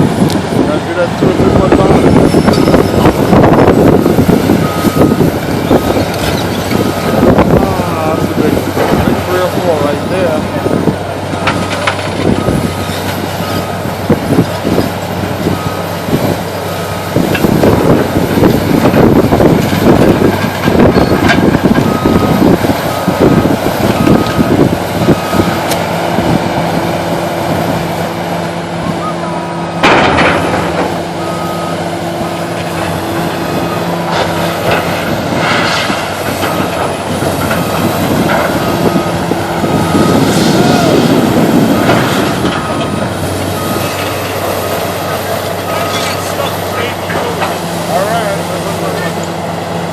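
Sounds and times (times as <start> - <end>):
excavator diesel engine under load: 0.0 - 49.9
travel alarm beeping: 4.6 - 5.9, 21.8 - 25.6, 31.2 - 31.8, 42.6 - 47.1.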